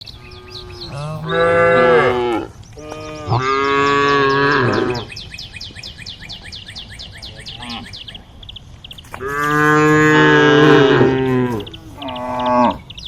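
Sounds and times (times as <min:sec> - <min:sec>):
cattle mooing: 0:00.2 - 0:05.1, 0:09.2 - 0:12.8.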